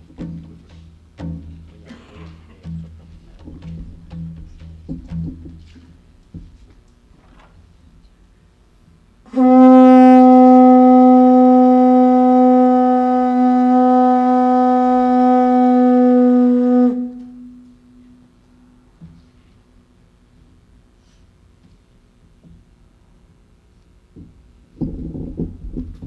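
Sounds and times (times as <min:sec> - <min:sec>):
horn blowing a long note: 0:09.3 - 0:18.4.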